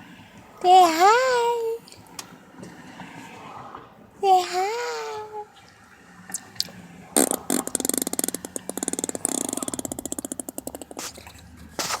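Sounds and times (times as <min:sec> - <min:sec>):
baby making fart sounds: 0:07.2 - 0:12.0.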